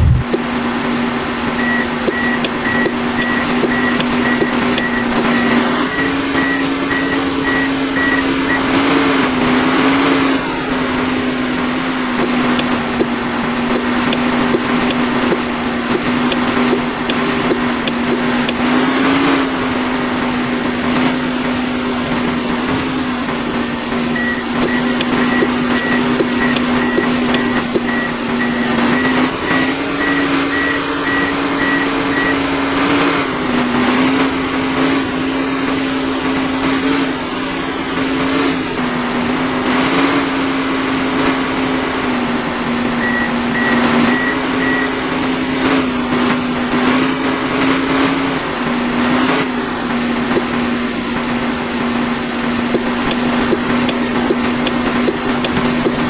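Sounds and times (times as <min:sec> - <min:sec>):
machine motor humming: 0:00.0 - 0:46.8, 0:49.6 - 0:56.0
quick electronic beeps: 0:01.6 - 0:08.7, 0:24.2 - 0:32.5, 0:43.0 - 0:45.0.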